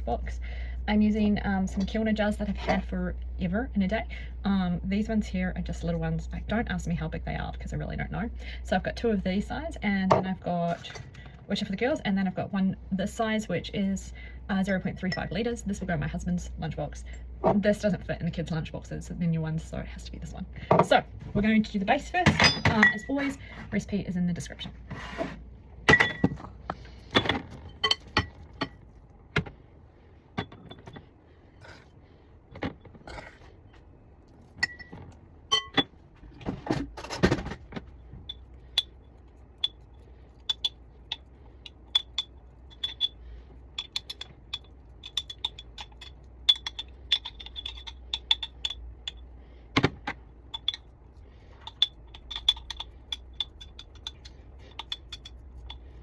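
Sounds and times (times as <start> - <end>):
spoon clinking against bowl and jars: 22.4 - 23.2, 27.7 - 28.7, 34.6 - 35.9, 39.6 - 49.2, 50.5 - 50.9, 51.6 - 55.9.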